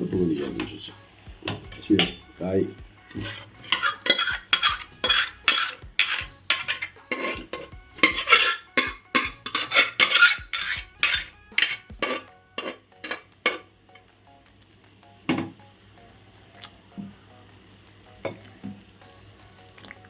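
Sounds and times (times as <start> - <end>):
spoon clinking against pot: 1.4 - 2.3, 3.1 - 13.7.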